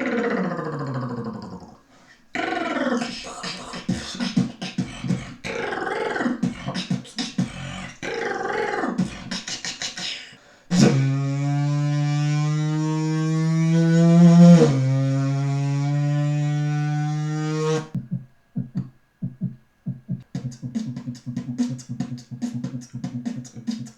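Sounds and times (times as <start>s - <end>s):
person beatboxing: 2.4s - 11.1s, 18.0s - 23.9s.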